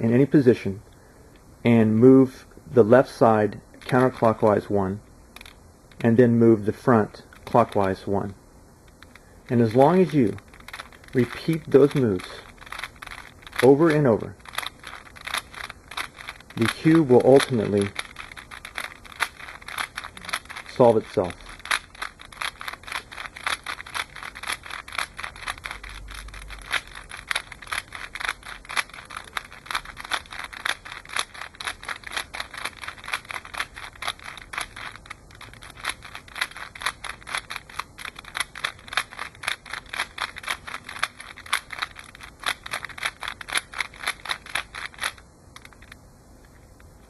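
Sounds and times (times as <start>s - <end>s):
puzzle cube clicking: 3.7s - 8.2s, 8.9s - 46.9s.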